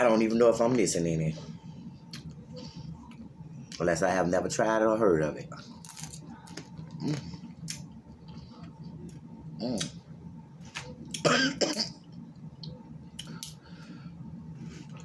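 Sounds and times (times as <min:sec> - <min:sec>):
person coughing: 0:11.2 - 0:12.0.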